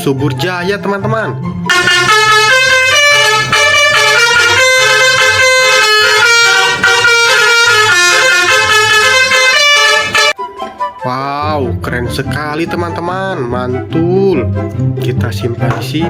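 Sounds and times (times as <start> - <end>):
multi-tone bus horn tune: 1.7 - 10.4.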